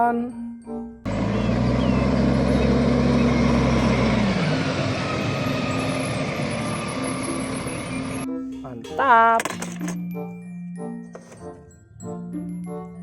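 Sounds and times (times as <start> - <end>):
garbage truck engine running: 1.1 - 8.3.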